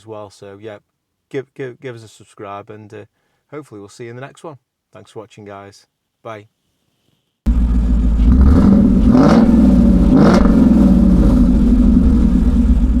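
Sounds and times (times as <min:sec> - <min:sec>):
car engine revving: 0:07.5 - 0:13.0.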